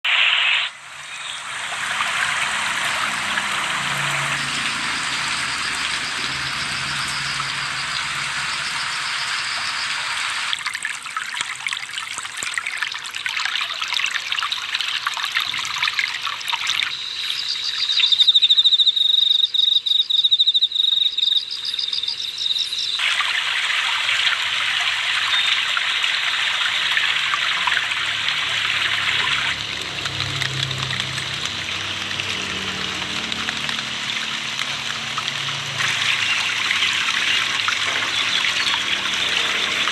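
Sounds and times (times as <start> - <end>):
high-pitched pulsing buzz: 0.0 - 10.6
water trickling and flowing: 0.7 - 18.6, 22.6 - 39.9.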